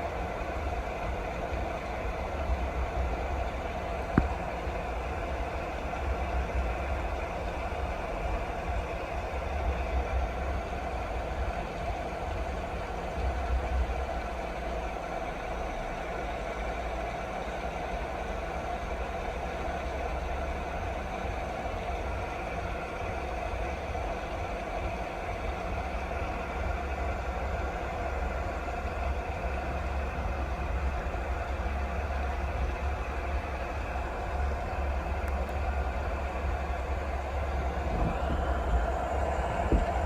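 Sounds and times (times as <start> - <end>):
steady rain: 0.0 - 40.0
low rumble: 28.8 - 40.0.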